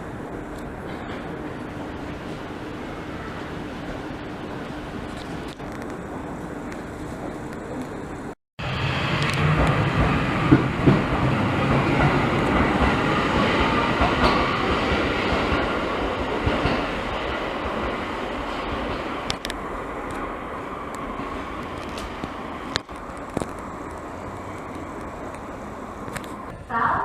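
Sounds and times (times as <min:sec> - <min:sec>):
electric train on rails: 0:00.0 - 0:27.0
train wheel clatter: 0:09.1 - 0:20.3.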